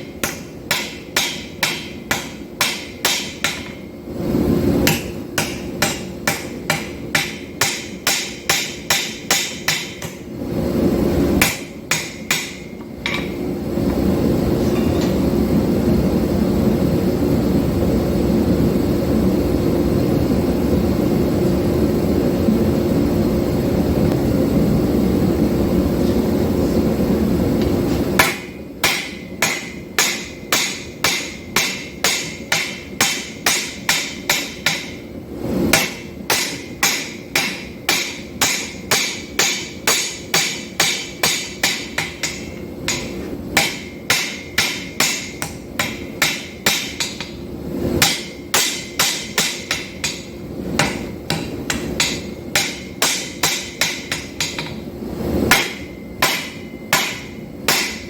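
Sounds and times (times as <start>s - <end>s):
hammer blows on anvil: 0.0s - 3.9s, 4.8s - 10.3s, 11.4s - 13.4s, 28.2s - 35.1s, 35.7s - 54.9s, 55.5s - 58.0s
low roar of machinery: 0.0s - 58.0s.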